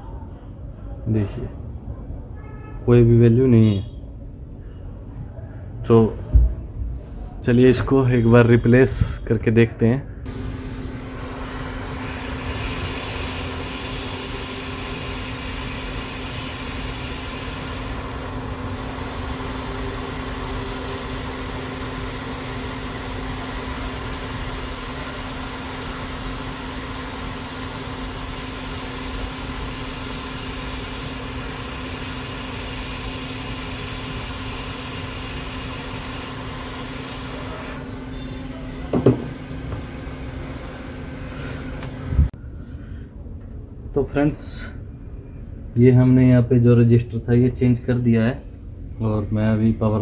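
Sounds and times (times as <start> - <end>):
hot-air rework station blowing: 10.3 - 42.4.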